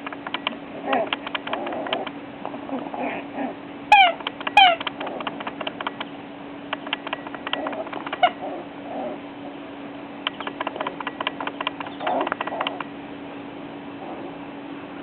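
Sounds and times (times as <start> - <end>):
small clicks and shuffling: 0.0 - 2.2, 4.2 - 6.1, 6.7 - 8.2, 10.3 - 12.9
steady hum: 0.0 - 15.0
puppy whimper: 11.9 - 12.9.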